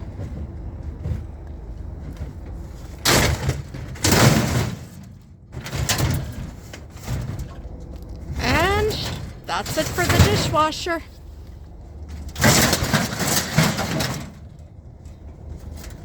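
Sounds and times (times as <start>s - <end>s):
dishwasher scraping and clattering: 5.6s - 7.5s, 12.4s - 14.5s.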